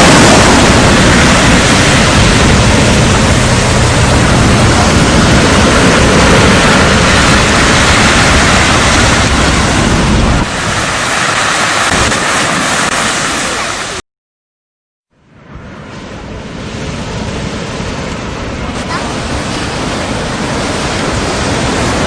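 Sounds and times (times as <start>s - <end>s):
wind buffeting microphone: 0.0s - 13.1s
strong wind: 0.0s - 14.0s, 15.2s - 22.0s
surf breaking: 0.0s - 14.0s, 15.6s - 22.0s.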